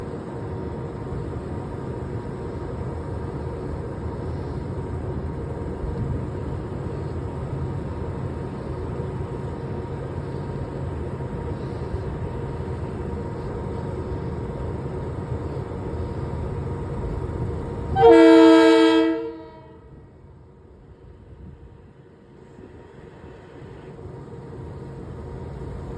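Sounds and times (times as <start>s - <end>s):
train low hum: 0.0s - 25.9s
train horn blast: 17.9s - 20.0s.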